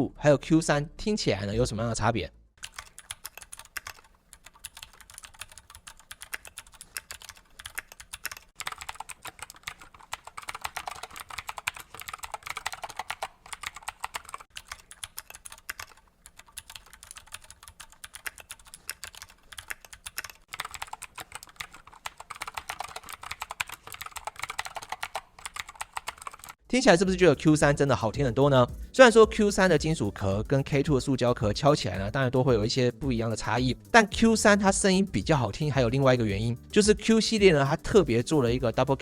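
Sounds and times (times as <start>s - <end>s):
clicky mechanical keyboard typing: 2.6s - 26.6s.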